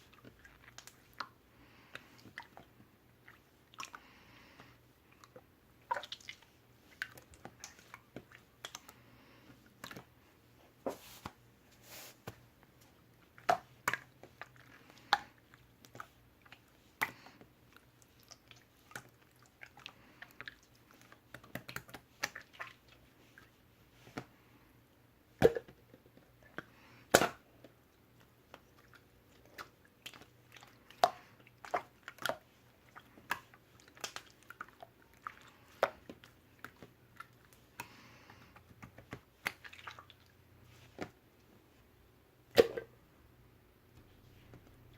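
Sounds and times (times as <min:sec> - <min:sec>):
faint steady hum: 0:00.0 - 0:44.9.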